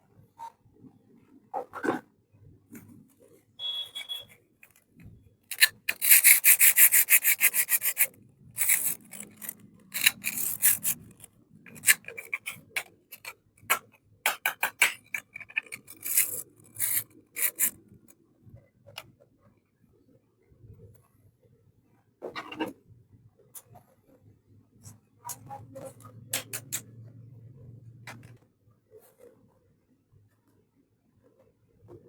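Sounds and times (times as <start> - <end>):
hands scraping plastic toy pieces: 4.0 - 17.8, 26.3 - 26.9.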